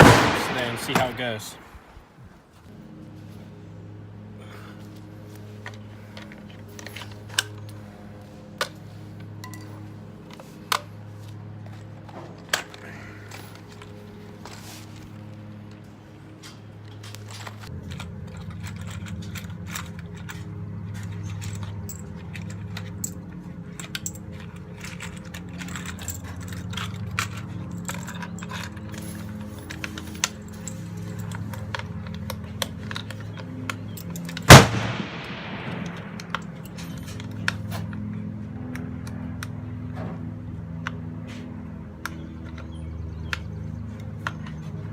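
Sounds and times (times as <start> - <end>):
rifle shot ringing out: 0.0 - 1.8, 34.5 - 36.3.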